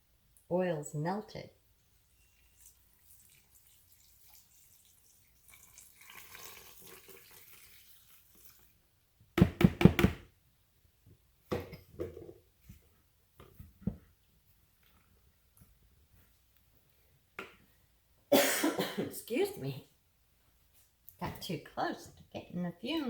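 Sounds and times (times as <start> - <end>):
liquid pouring into container: 1.8 - 8.8.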